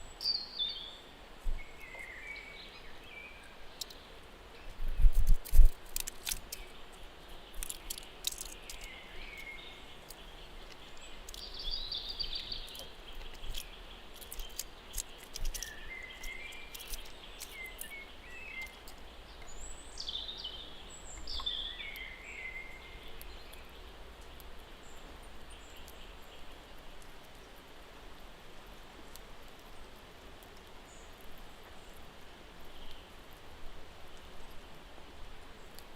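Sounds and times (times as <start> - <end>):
birds chirping: 0.0 - 5.2, 5.9 - 27.6.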